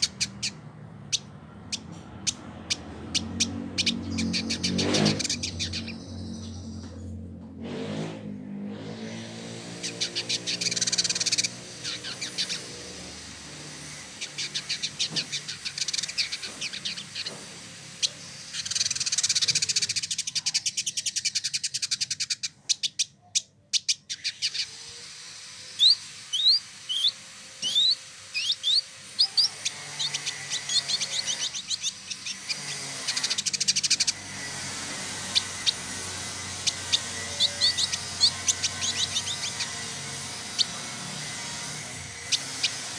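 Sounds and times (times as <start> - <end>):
bird chattering trills: 0.0 - 7.1, 9.4 - 42.9
rising whistled bird notes: 25.7 - 34.1.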